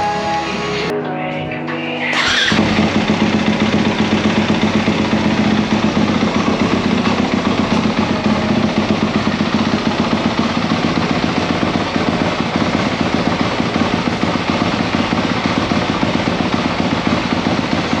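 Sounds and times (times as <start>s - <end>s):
dirt bike engine running: 2.2s - 18.0s.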